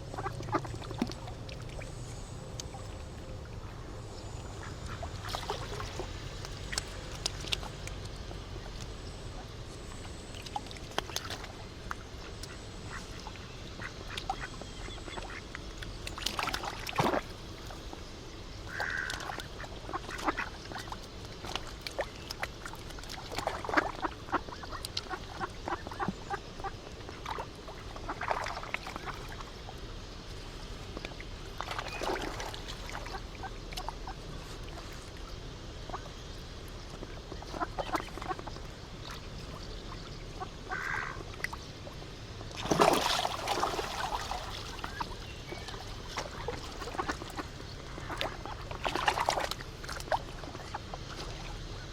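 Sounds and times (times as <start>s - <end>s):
steady background hiss: 0.0s - 51.9s
ducks quacking: 18.7s - 20.6s, 40.3s - 41.2s.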